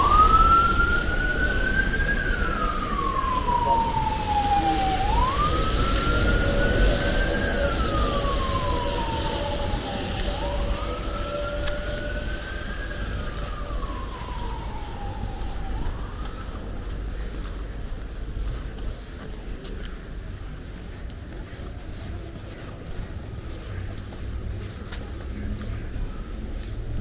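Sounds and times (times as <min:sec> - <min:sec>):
siren wailing: 0:00.0 - 0:18.0.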